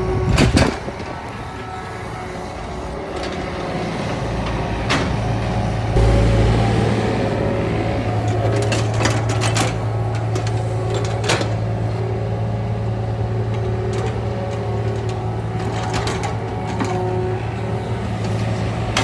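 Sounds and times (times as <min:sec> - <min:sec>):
diesel engine running: 0:00.0 - 0:19.0.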